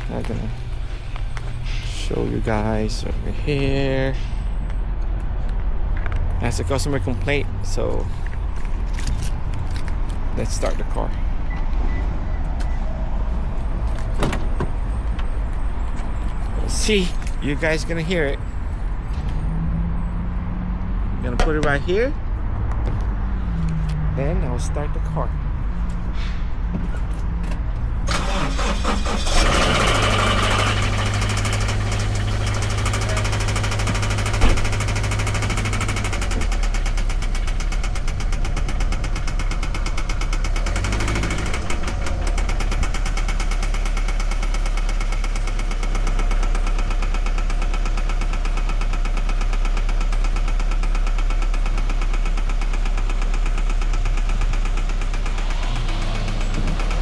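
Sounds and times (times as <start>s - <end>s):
engine idling: 0.0s - 4.3s, 28.1s - 57.0s
engine starter cranking: 28.0s - 46.0s
rapid even engine knock: 30.2s - 57.0s.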